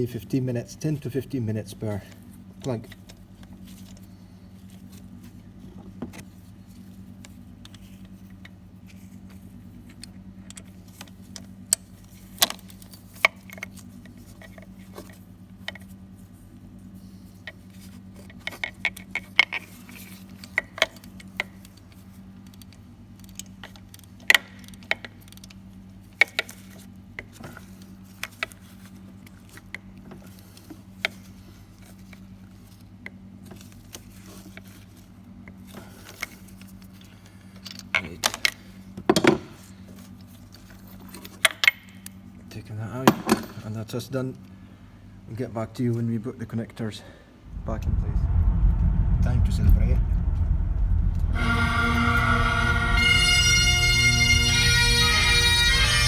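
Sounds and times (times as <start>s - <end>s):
steady low hum: 47.4s - 56.0s.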